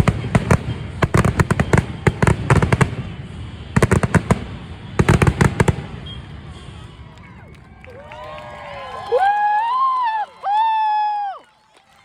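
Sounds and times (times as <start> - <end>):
fireworks bangs and cracks: 0.0 - 7.7.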